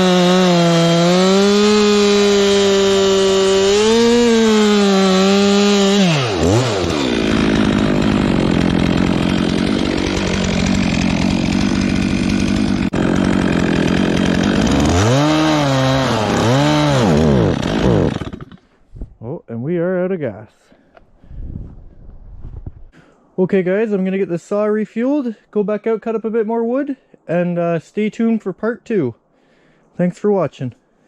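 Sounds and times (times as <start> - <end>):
chainsaw cutting firewood: 0.0 - 18.7.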